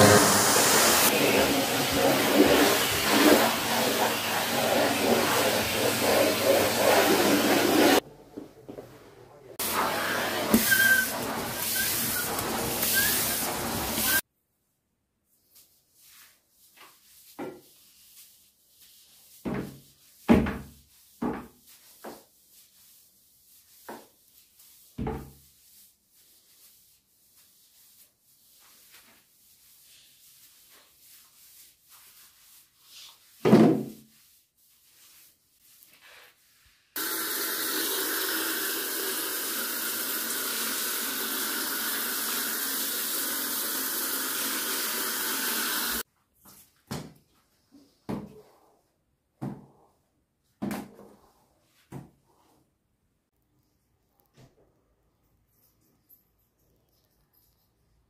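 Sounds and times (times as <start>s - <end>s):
running tap water: 0.0s - 8.0s, 9.6s - 14.2s, 37.0s - 46.0s.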